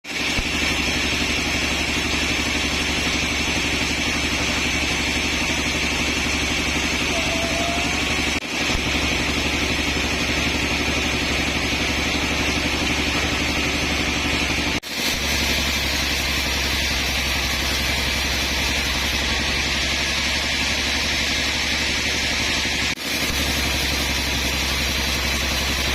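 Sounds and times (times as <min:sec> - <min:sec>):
high machine whine: 0:00.1 - 0:25.9
sawmill machinery droning: 0:00.1 - 0:25.9.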